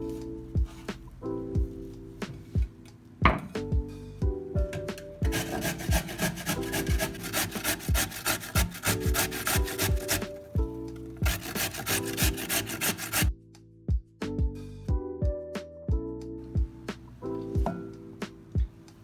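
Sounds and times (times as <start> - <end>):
soft background music: 0.0 - 19.0
carrots rasping on grater: 5.3 - 10.5, 11.2 - 13.3.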